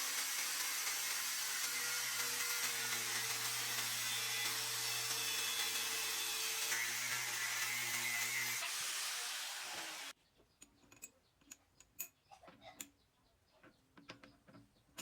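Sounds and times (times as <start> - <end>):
power tool running: 0.0 - 10.1.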